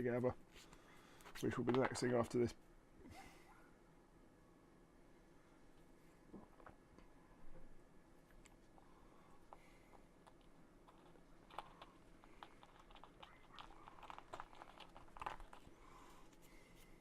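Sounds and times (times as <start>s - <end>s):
wooden pieces clicking and tapping: 9.5s - 15.7s.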